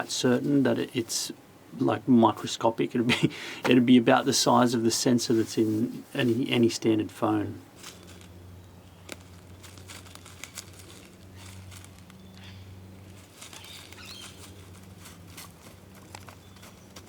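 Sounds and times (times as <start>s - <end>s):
soft clicks and rustles: 9.0s - 17.0s.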